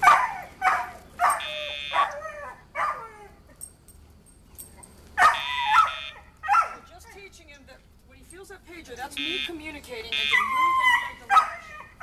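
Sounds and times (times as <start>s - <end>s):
dog whining and yipping: 4.7s - 6.8s, 10.3s - 12.0s.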